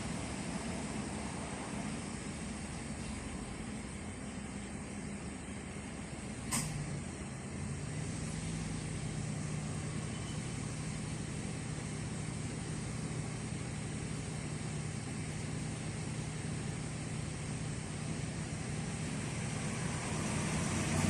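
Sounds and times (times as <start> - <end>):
car engine idling: 0.0 - 21.0
sharp click: 6.5 - 6.8.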